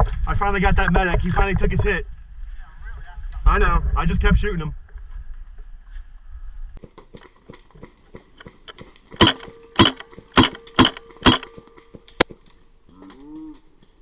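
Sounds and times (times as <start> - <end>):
sharp click: 8.4 - 12.3.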